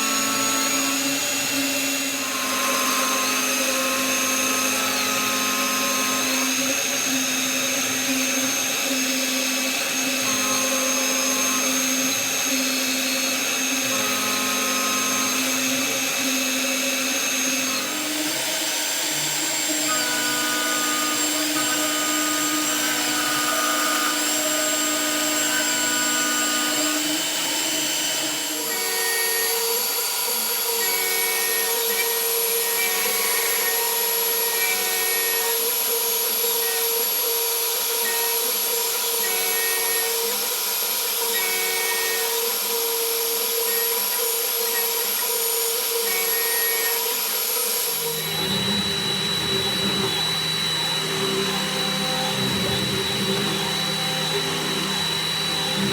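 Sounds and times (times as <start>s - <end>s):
milling machine whine: 0.0s - 55.9s.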